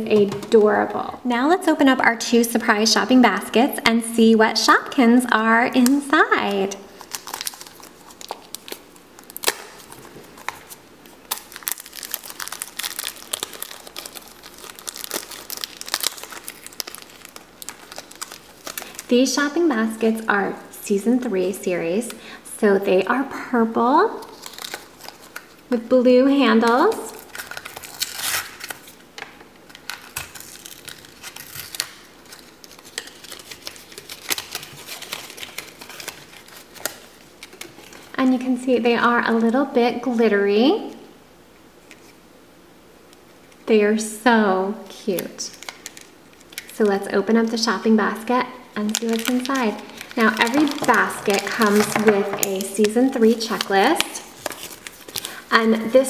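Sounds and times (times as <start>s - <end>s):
plastic packaging crinkling: 5.7s - 20.2s, 24.2s - 25.8s, 26.7s - 38.2s, 45.2s - 56.0s.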